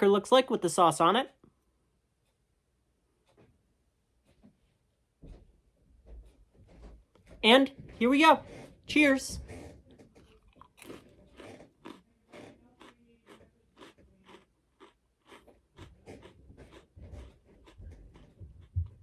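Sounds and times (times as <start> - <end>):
person chewing cracker: 10.0 - 19.0.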